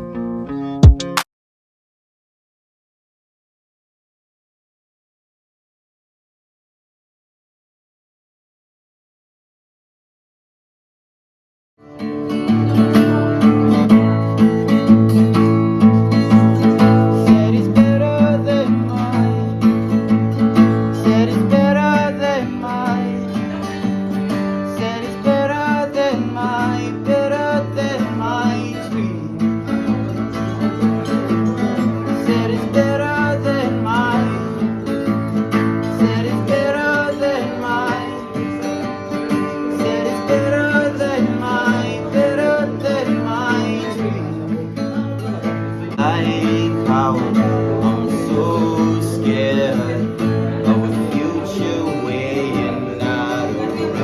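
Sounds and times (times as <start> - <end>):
acoustic guitar music: 0.0 - 1.2, 11.8 - 54.0
person singing: 15.8 - 34.9, 35.6 - 54.0.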